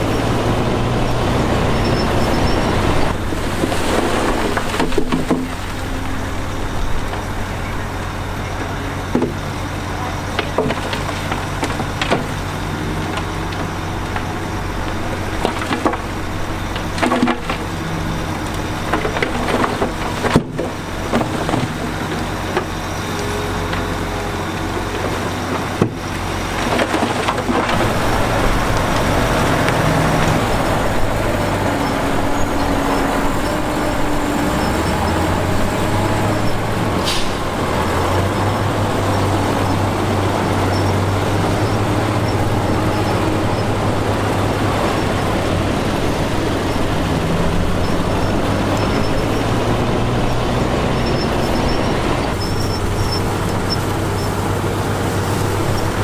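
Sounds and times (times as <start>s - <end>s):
heavy diesel machinery running: 0.0s - 56.0s
clanks of rock and steel: 8.4s - 24.0s.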